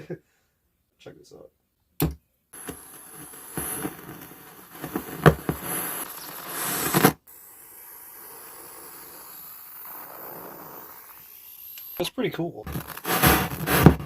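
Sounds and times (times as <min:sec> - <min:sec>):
sharp pops: 0:02.0 - 0:14.0
crackling feedback noise: 0:02.6 - 0:07.2, 0:07.8 - 0:14.0
steady hiss: 0:02.6 - 0:14.0.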